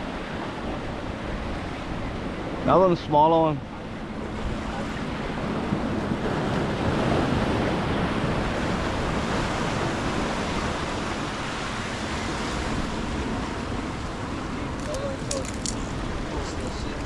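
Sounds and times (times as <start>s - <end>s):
surf washing: 0.0s - 17.0s
wind buffeting microphone: 3.6s - 17.0s.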